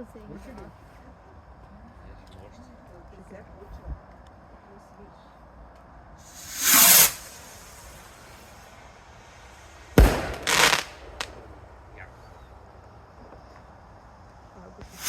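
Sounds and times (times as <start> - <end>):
firework bang: 6.2 - 12.5
firework hissing rush: 6.2 - 12.8.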